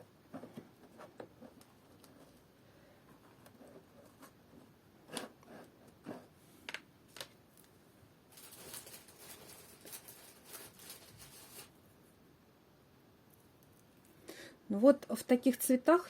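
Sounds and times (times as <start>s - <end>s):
crinkly rustling: 7.1s - 11.8s.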